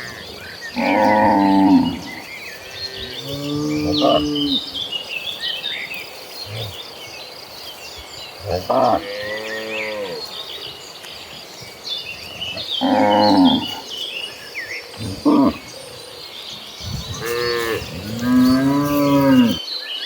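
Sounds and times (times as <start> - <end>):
cattle mooing: 12.8 - 13.8, 17.0 - 19.6.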